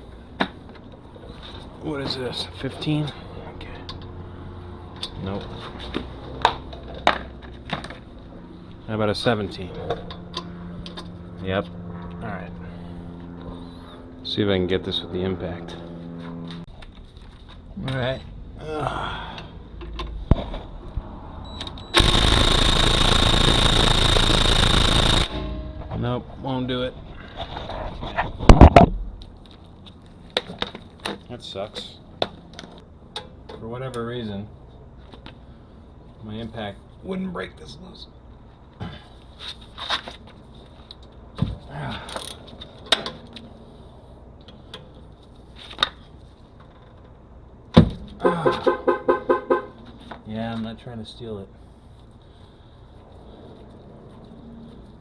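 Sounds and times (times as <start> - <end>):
impact wrench hammering: 22.0 - 25.9
car alarm horn blasts: 48.2 - 49.8.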